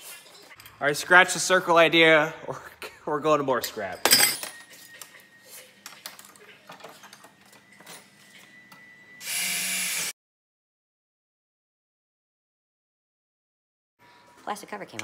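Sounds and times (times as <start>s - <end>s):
power drill running: 9.2s - 10.2s.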